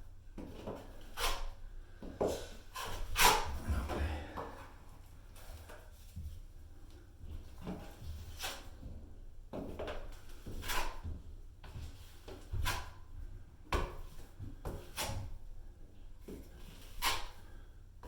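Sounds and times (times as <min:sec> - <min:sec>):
drywall knife scraping wall: 0:00.4 - 0:04.0, 0:07.6 - 0:09.0, 0:09.7 - 0:13.0, 0:13.9 - 0:15.4, 0:16.3 - 0:17.6.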